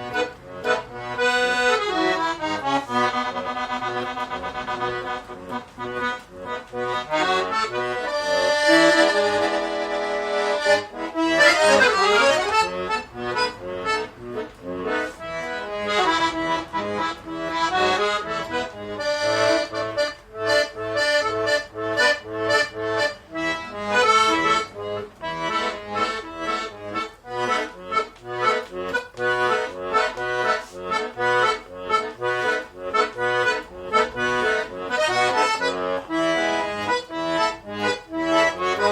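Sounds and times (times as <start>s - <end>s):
accordion playing a tune: 0.0s - 38.9s.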